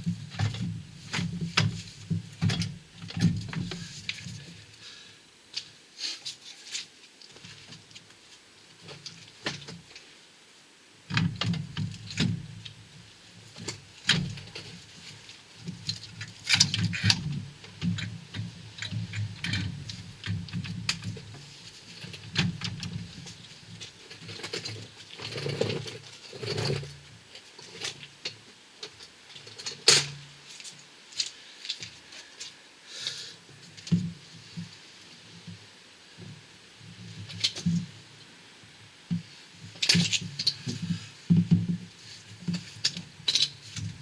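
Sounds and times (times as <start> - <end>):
metallic clicks and knocks: 42.5 - 44.0.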